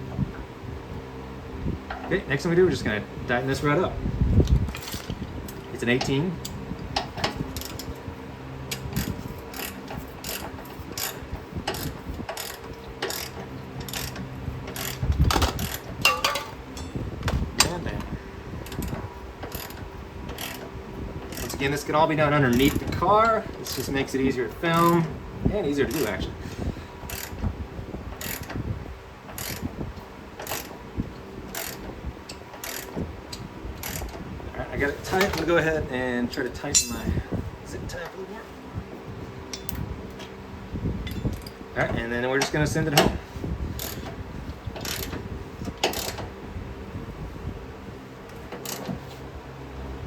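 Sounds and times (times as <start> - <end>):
ratchet wrench clicking: 8.7 - 16.4, 18.6 - 20.6, 21.3 - 21.6, 27.1 - 27.4, 28.2 - 28.6, 29.4 - 29.7, 30.4 - 30.7, 31.5 - 34.2, 43.8 - 44.1, 44.8 - 45.2.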